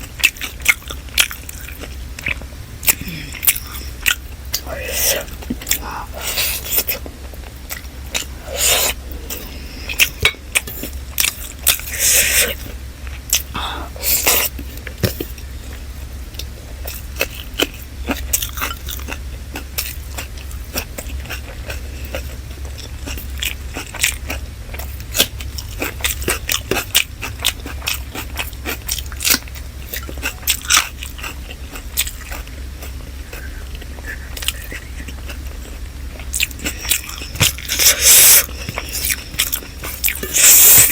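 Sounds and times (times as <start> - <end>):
chewing and mouth smacks: 0.0 - 40.9
food crunching: 0.0 - 40.9
steady low hum: 0.0 - 40.9.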